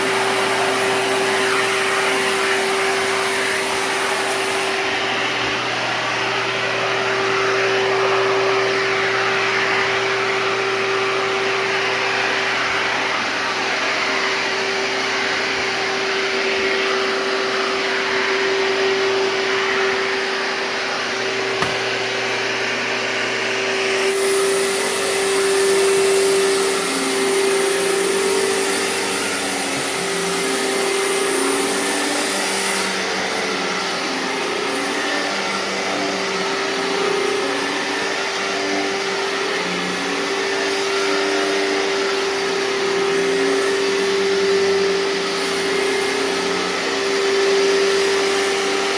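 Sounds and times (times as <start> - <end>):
vacuum cleaner motor whine: 0.0 - 48.9.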